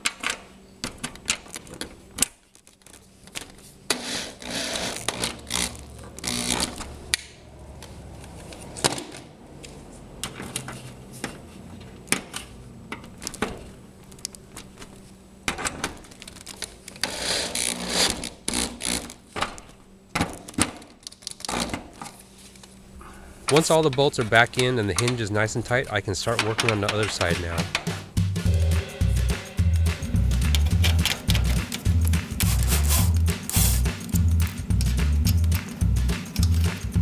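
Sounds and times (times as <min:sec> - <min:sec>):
power tool rapid clicking: 0:30.3 - 0:36.9.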